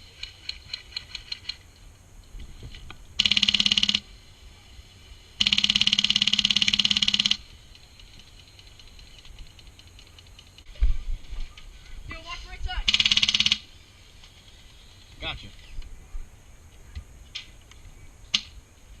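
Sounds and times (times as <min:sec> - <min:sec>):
airsoft machine gun bursts: 0:03.2 - 0:04.1, 0:05.4 - 0:07.5, 0:12.9 - 0:13.7.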